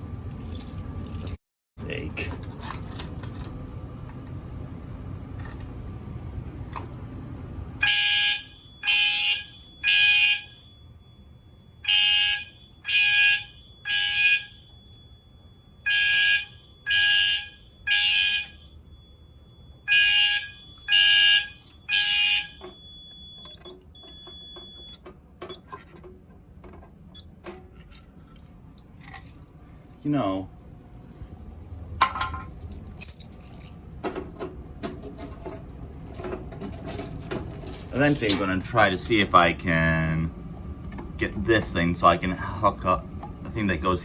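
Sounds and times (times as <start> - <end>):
steady low hum: 0.0 - 44.0
fire alarm horn blasts: 7.8 - 25.0.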